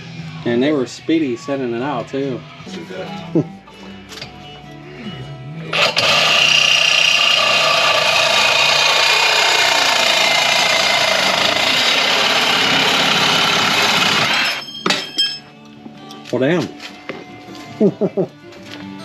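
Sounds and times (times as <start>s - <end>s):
power tool running: 5.7s - 14.6s.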